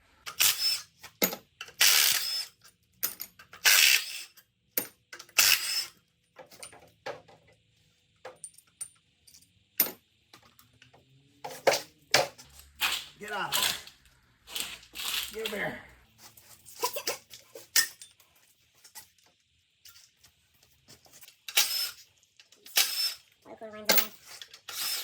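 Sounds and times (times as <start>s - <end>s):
metal tools clinking and clanking: 17.3s - 18.2s.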